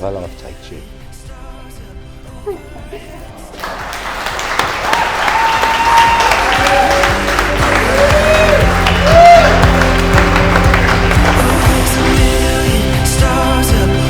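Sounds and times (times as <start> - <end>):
background music: 0.0 - 14.0
guests applauding: 3.5 - 13.0.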